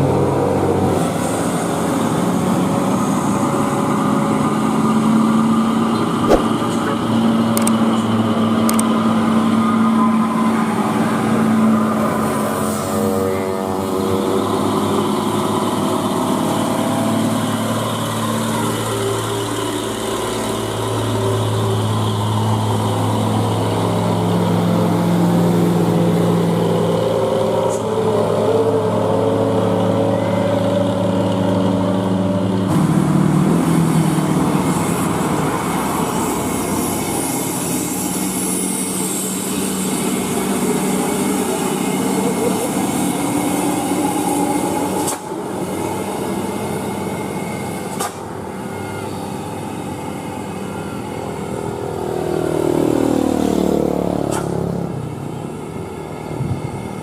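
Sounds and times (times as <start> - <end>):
diesel truck engine under load: 0.0 - 57.0.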